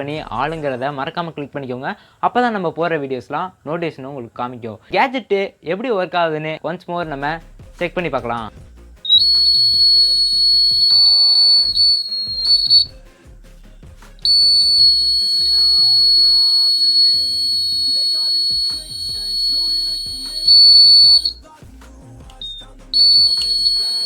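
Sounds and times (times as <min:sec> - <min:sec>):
high-pitched alarm buzzer: 0:09.0 - 0:12.9, 0:14.3 - 0:21.4, 0:22.4 - 0:24.0.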